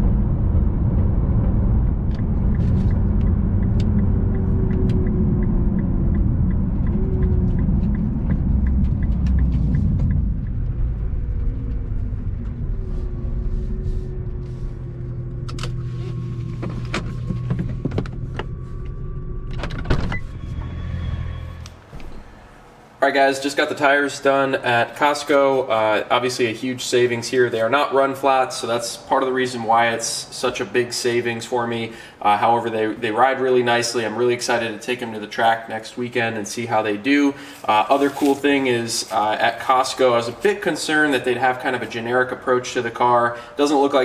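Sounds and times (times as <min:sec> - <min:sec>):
tyre and engine rumble: 0:00.0 - 0:23.0
sharp clicks and knocks: 0:01.4 - 0:11.3.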